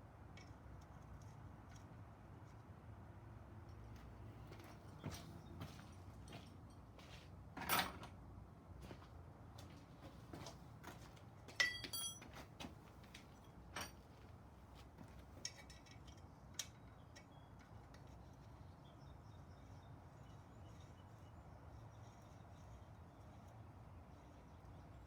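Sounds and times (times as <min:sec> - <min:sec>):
allen key clicking on metal nuts: 0:15.4 - 0:18.1.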